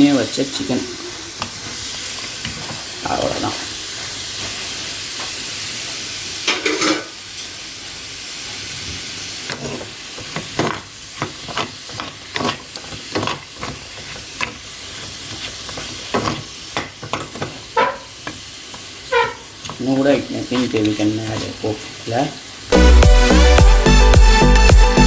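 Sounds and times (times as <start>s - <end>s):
chicken wings sizzling in a pan: 0.0s - 22.8s
utensil scraping against pan: 9.5s - 22.0s.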